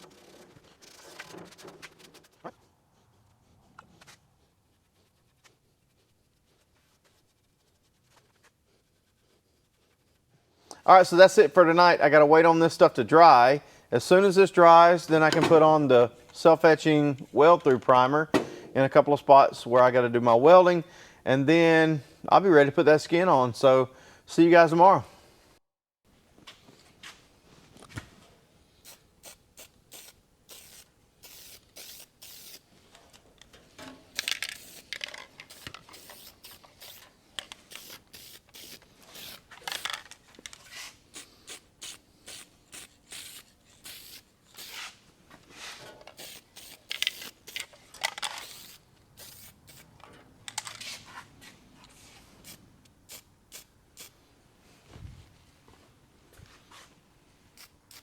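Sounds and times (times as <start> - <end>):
aerosol spray hisses: 28.9 - 32.6, 35.5 - 37.0, 37.7 - 39.4, 46.2 - 47.4.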